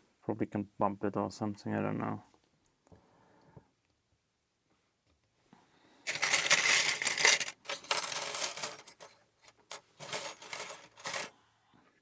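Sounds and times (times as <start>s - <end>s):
small metal tools clinking: 6.1s - 11.3s.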